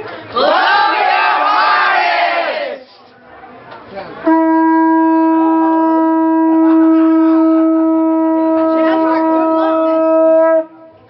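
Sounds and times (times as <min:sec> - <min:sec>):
conch shell trumpet note: 0:04.2 - 0:11.0.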